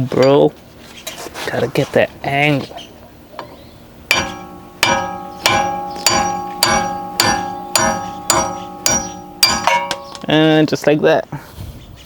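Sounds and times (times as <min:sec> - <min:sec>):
hammer blows on steel: 0:04.1 - 0:10.3.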